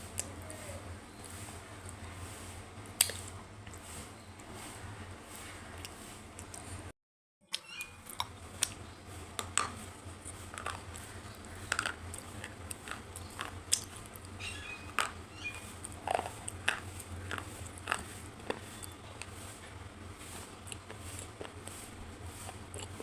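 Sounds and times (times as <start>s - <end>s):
crunchy chewing and mouth clicks: 2.8s - 3.8s, 5.8s - 6.8s, 7.5s - 23.0s
steady low hum: 8.0s - 23.0s.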